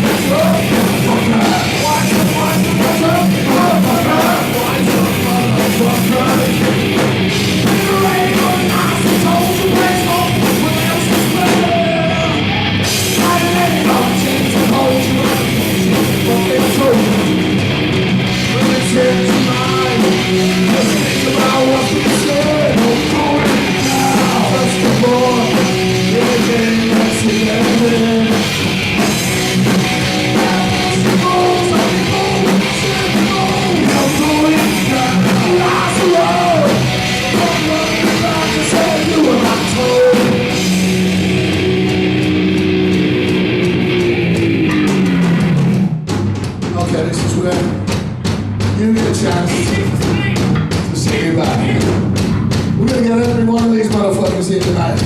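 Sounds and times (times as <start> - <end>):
person singing lead vocal: 0.0 - 7.0, 7.6 - 17.3, 18.3 - 40.8
distorted electric guitar: 0.0 - 55.0
drum kit: 0.0 - 55.0.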